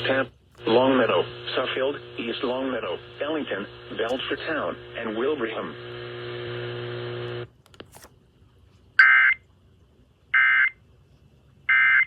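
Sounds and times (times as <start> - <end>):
steady hum: 0.0 - 8.1.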